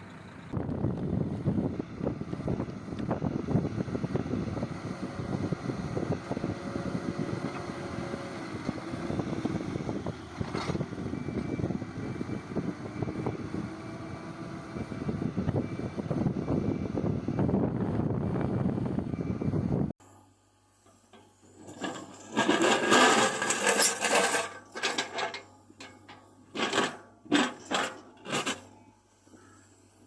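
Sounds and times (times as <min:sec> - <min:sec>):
heavy machine engine running: 0:00.0 - 0:19.9, 0:21.4 - 0:28.8
wind buffeting microphone: 0:00.4 - 0:19.9.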